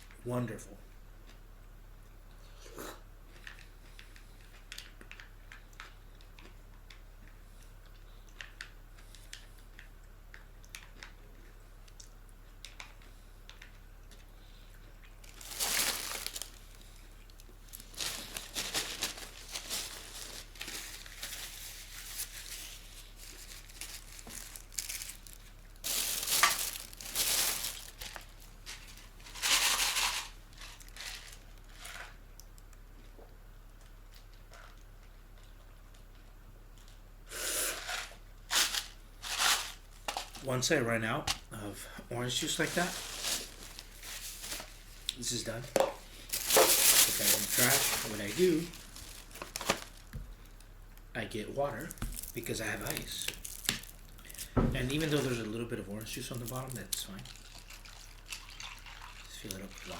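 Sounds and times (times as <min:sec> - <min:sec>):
plastic packaging crinkling: 0:15.0 - 0:32.2, 0:37.8 - 0:40.6, 0:42.2 - 0:50.7, 0:51.4 - 0:59.9.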